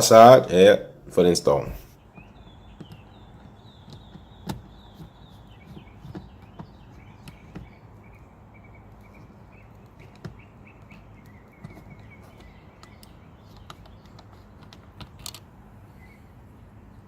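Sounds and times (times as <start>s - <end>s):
faint bird chirping: 0.0s - 17.0s
sharp clicks: 8.9s - 15.5s.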